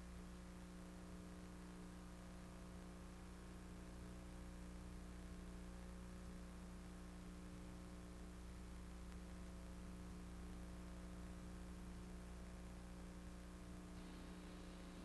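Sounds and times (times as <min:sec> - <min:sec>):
electrical hum and buzz: 0:00.0 - 0:15.0
faint hiss: 0:09.0 - 0:15.0.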